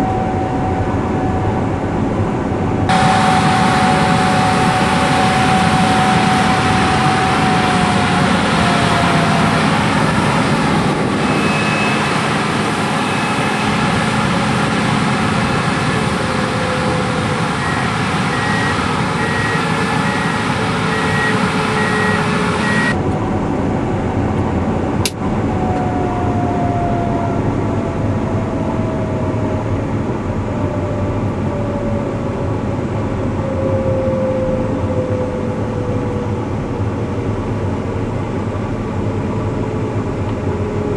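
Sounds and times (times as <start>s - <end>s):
combine harvester running: 0.0s - 33.4s, 34.4s - 40.9s
slowly falling tones: 2.9s - 23.0s
rapid high beeping: 17.6s - 23.0s.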